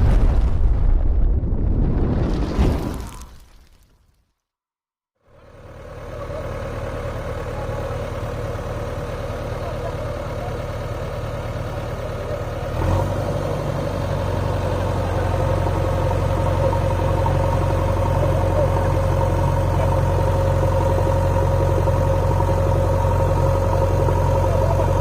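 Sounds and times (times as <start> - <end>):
diesel engine running: 5.2 - 25.0.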